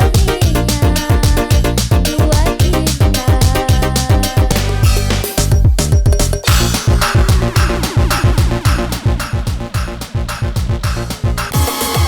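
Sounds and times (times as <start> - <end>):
deep kick drum: 0.0 - 11.7
dance music remix: 0.0 - 12.0
synth lead melody: 6.5 - 12.0.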